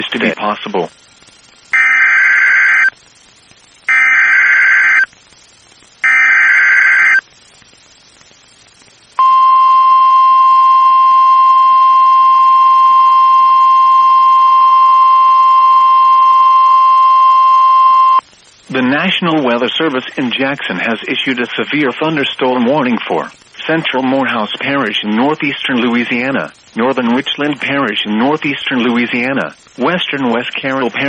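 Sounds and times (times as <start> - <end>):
buzzing digital data bursts: 1.2 - 3.0, 3.8 - 5.4, 6.0 - 12.9
steady warning alarm tone: 1.8 - 2.9, 3.9 - 5.1, 6.0 - 7.2, 9.2 - 18.2.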